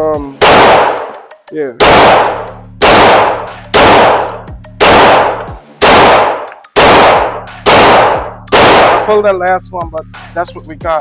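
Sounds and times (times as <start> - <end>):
pistol shots with echo: 0.4 - 1.2, 1.8 - 9.2.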